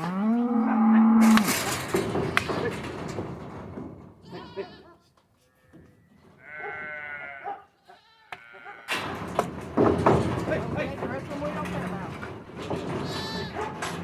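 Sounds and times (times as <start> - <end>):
sheep bleating: 6.4 - 8.9.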